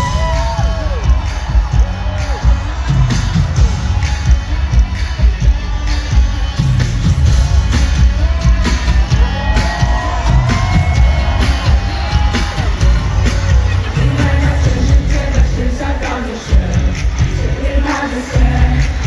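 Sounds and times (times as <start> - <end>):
bass-heavy dance beat: 0.0 - 19.0
crowd shouting: 0.0 - 19.0
person singing: 10.1 - 19.0.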